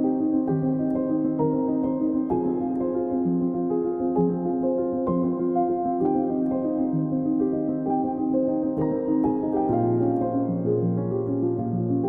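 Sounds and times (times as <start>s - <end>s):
calm keyboard music: 0.0s - 12.0s.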